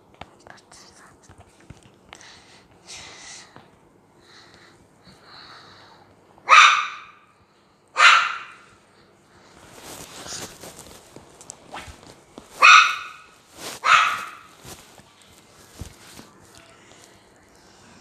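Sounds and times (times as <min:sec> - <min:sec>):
dog barking: 0:06.5 - 0:07.3, 0:08.0 - 0:08.7, 0:12.6 - 0:14.5.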